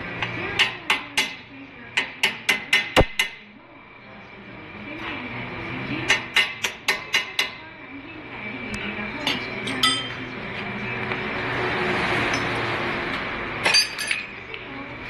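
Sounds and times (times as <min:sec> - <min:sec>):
hammer striking metal: 0:02.0 - 0:03.4, 0:06.1 - 0:07.6.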